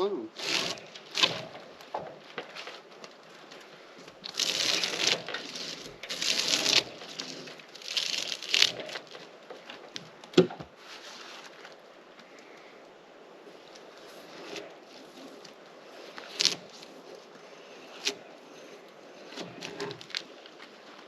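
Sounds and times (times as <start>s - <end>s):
drawknife scraping bark: 0.3s - 9.9s, 13.8s - 20.6s.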